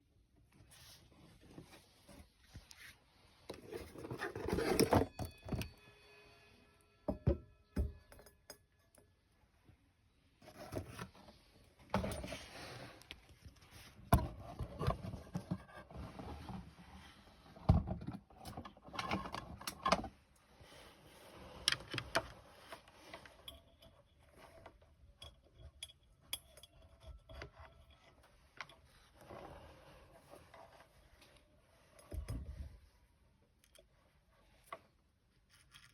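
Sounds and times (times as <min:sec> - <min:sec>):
faint ringing tone: 0:04.6 - 0:09.2.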